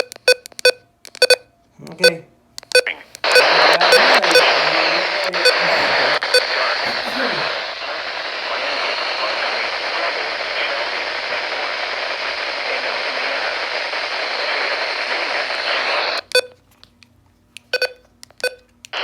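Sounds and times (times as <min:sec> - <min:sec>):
radio static hiss: 0:02.8 - 0:16.3
short electronic beeps: 0:17.7 - 0:18.6.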